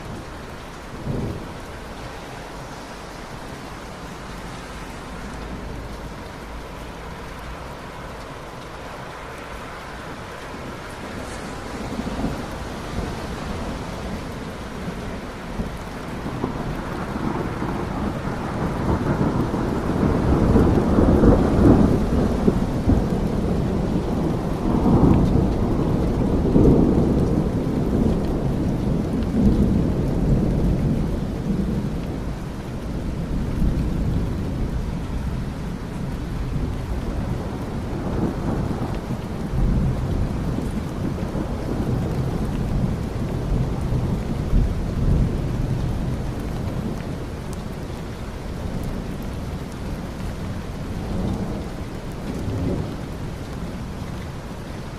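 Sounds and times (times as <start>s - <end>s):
heavy rain: 0.0s - 54.9s
thunder rolling: 10.6s - 32.4s.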